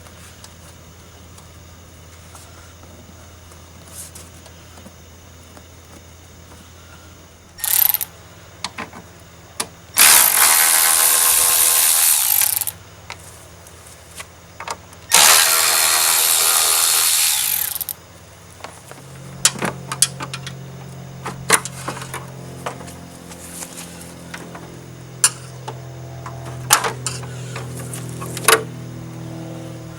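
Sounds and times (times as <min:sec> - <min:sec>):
power tool running: 0:07.6 - 0:08.1, 0:10.0 - 0:12.8, 0:15.1 - 0:18.0
clicks and knocks of handled parts: 0:24.3 - 0:28.7.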